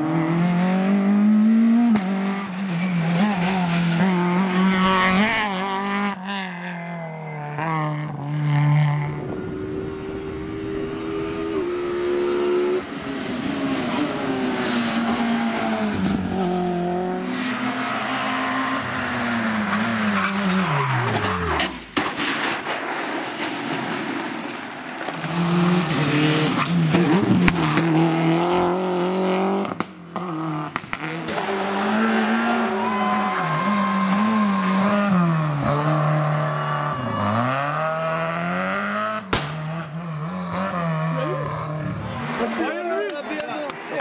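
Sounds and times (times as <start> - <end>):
rally car engines revving: 0.0 - 21.8, 22.4 - 44.0
tyres skidding and squealing: 6.8 - 28.0, 31.0 - 44.0.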